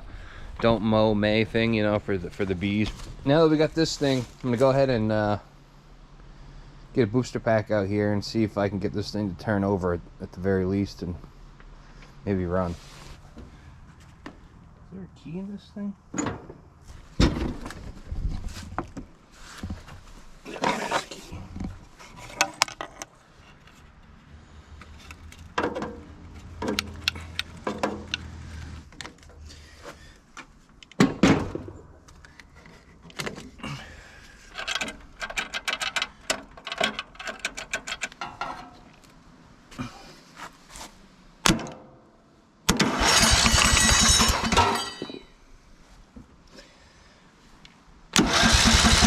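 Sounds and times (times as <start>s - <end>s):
clanks and clicks of tools: 34.5s - 39.0s, 42.7s - 45.3s
mower starter cranking engine: 42.7s - 45.2s, 48.2s - 49.0s.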